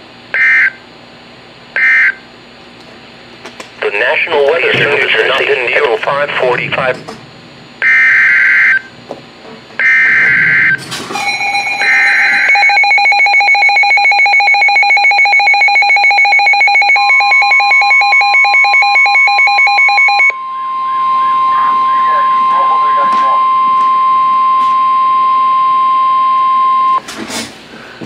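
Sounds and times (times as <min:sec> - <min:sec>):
steady alarm tone: 0:00.3 - 0:00.9, 0:01.8 - 0:02.3, 0:04.0 - 0:09.0, 0:09.8 - 0:27.0
pulsing electronic alarm tone: 0:07.8 - 0:09.0, 0:09.8 - 0:27.0.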